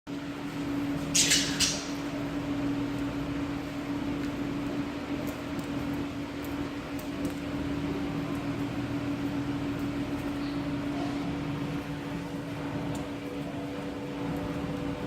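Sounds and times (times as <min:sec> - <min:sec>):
electric fan humming: 0:00.1 - 0:15.0.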